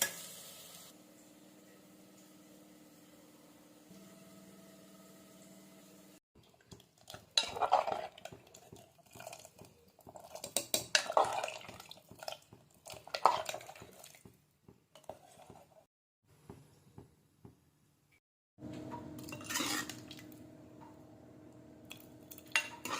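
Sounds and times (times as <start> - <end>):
metal spoon scraping a pot: 7.4 - 8.4, 19.2 - 20.1, 22.5 - 22.9.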